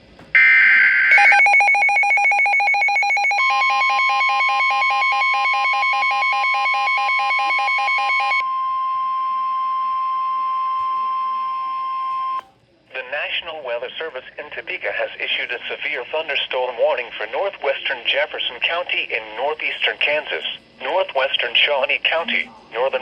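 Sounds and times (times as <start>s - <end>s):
rapid pulsing electronic beeps: 0.4s - 8.4s
long steady alarm tone: 0.4s - 12.4s.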